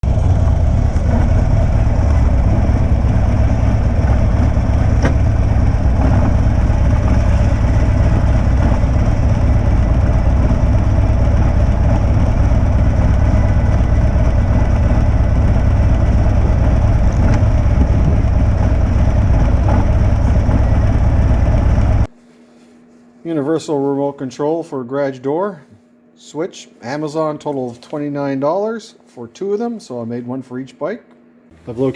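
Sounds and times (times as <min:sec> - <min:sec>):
motorcycle engine running: 0:00.0 - 0:22.1.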